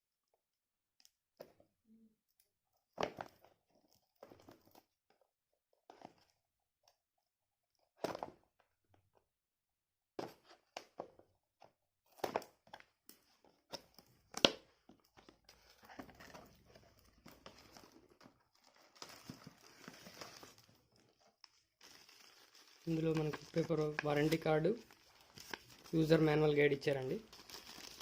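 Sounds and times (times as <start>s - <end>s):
rustling of paper and packaging: 14.8s - 28.0s.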